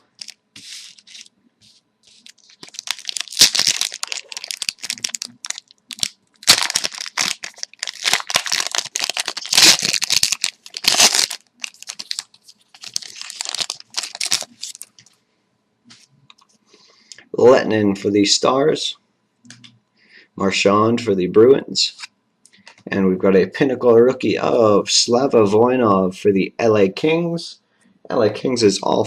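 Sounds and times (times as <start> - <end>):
foil wrapper crinkling: 0.0 - 1.3, 2.0 - 15.1.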